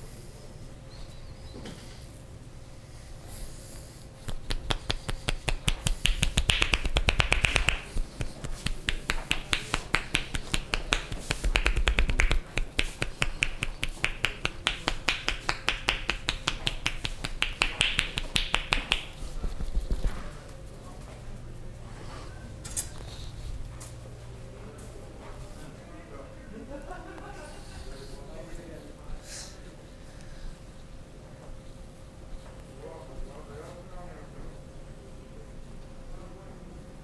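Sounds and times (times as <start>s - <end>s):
hands clapping on body: 4.2s - 19.7s.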